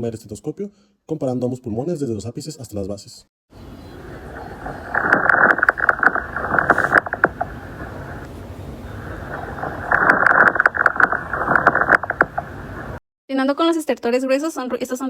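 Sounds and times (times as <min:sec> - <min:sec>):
fine crackling clicks in lungs: 0:04.7 - 0:08.3, 0:09.0 - 0:13.0
breaths through a stethoscope: 0:05.6 - 0:09.8.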